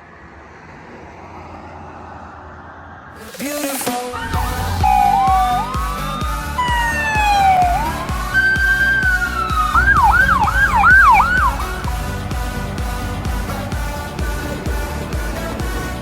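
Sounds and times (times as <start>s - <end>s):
music with steady beat: 3.4s - 16.0s
fire engine siren wailing and yelping: 4.1s - 12.0s.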